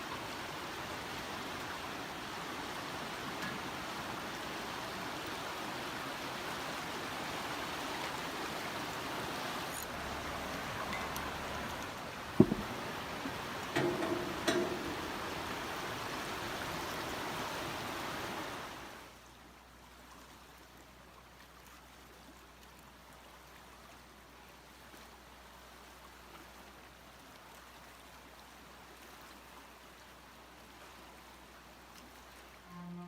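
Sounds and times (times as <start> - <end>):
water rushing: 0.0 - 19.2
faint water hiss: 0.0 - 33.0.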